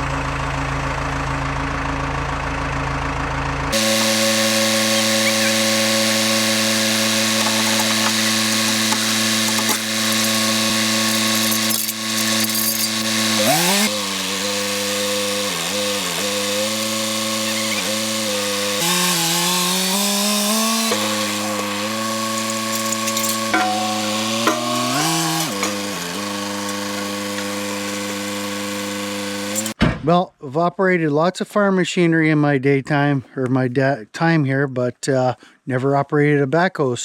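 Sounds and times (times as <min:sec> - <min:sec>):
engine revving under load: 0:03.7 - 0:29.8.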